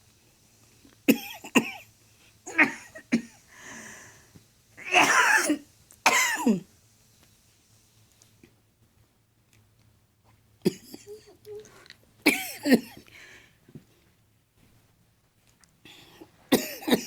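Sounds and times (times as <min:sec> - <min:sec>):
woman coughing and hacking: 0:01.1 - 0:01.8, 0:02.5 - 0:03.4, 0:04.8 - 0:06.6, 0:10.6 - 0:11.4, 0:12.2 - 0:13.0, 0:16.5 - 0:17.0.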